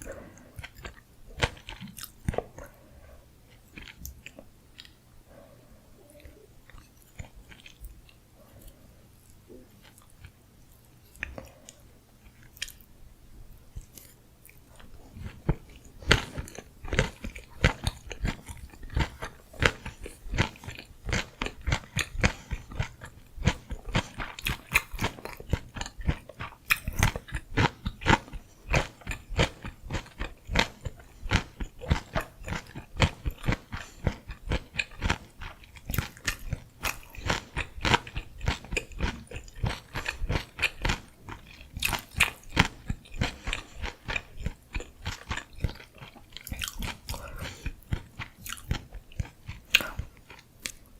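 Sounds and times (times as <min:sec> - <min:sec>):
crunchy chewing: 0:00.0 - 0:02.9, 0:03.5 - 0:05.0, 0:06.2 - 0:12.9, 0:13.6 - 0:50.9.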